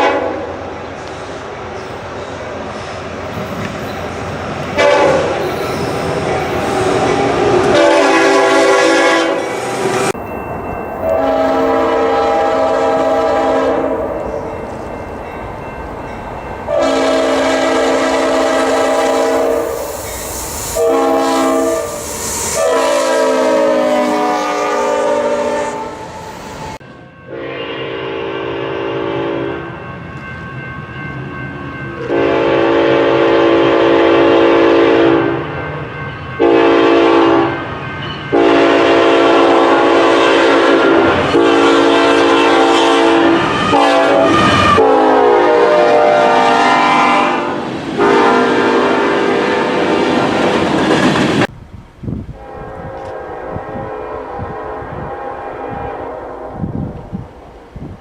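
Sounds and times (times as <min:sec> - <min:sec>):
locomotive air horn blasts: 0:00.0 - 0:00.5, 0:04.8 - 0:10.2, 0:11.0 - 0:14.5, 0:16.7 - 0:19.9, 0:20.6 - 0:29.6, 0:32.1 - 0:35.5, 0:36.4 - 0:37.7, 0:38.3 - 0:50.5, 0:52.4 - 0:56.7.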